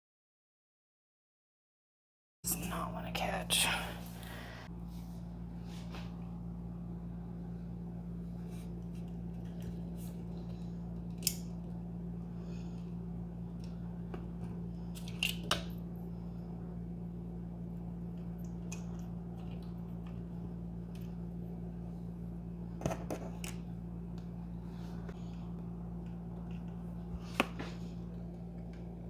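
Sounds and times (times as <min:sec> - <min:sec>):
steady low hum: 0:02.4 - 0:29.0.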